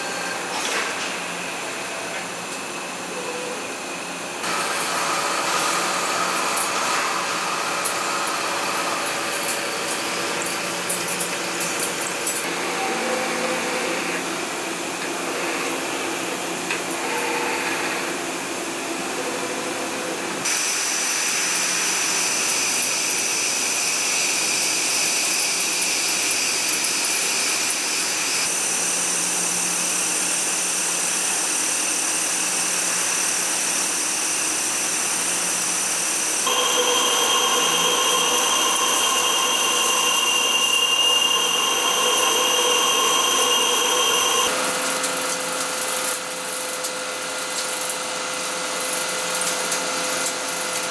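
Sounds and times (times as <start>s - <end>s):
cnc machine whining: 12.4s - 16.2s, 34.8s - 44.8s
cutting noise: 36.5s - 44.5s.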